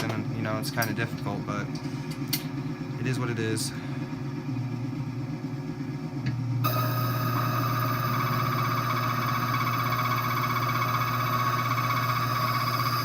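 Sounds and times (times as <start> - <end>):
machine motor hum: 0.0 - 13.0
cutter whining into key blank: 6.6 - 13.0.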